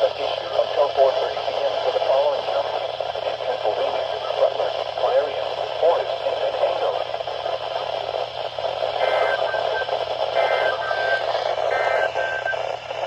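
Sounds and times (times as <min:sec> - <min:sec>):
radio static hiss: 0:00.0 - 0:13.0
warbling digital data bursts: 0:09.0 - 0:12.7.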